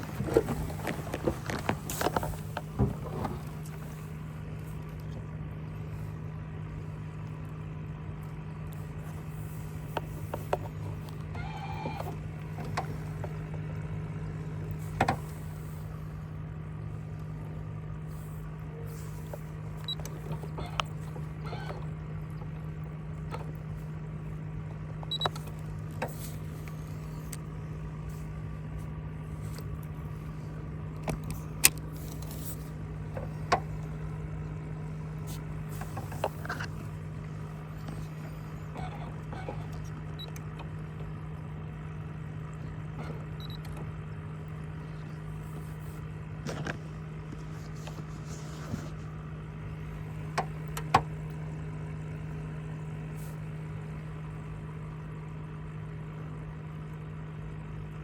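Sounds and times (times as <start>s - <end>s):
small electric motor humming: 8.8s - 24.4s.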